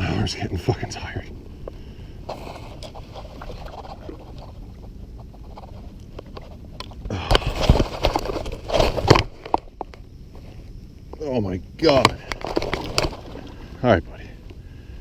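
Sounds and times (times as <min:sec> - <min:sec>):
fish thrashing and splashing: 0:02.3 - 0:04.7, 0:12.3 - 0:13.7.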